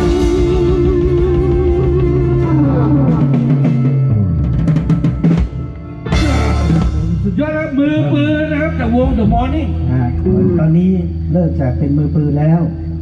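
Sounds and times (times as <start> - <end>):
drum fill: 0.0 - 9.5
live band music: 0.0 - 11.3
cymbal crash: 5.4 - 7.8.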